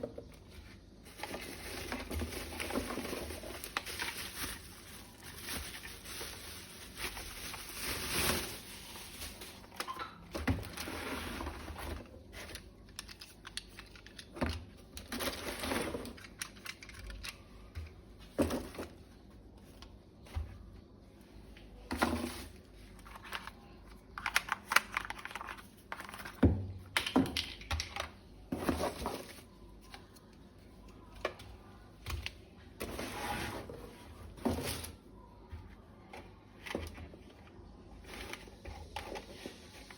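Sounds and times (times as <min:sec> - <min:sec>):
plastic packaging rustling: 0:00.3 - 0:17.4, 0:21.9 - 0:26.5, 0:28.5 - 0:30.2.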